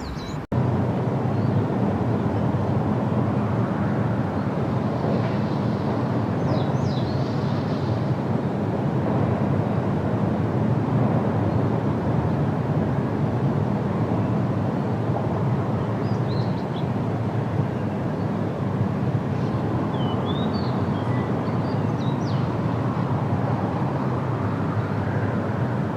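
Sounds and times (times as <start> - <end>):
high bird chirps: 0.0 - 0.5
low outdoor rumble: 0.0 - 20.0.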